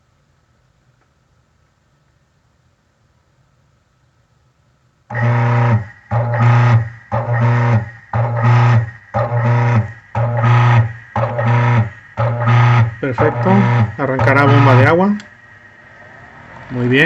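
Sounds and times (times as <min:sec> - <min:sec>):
washer motor humming in pulses: 0:05.1 - 0:17.0.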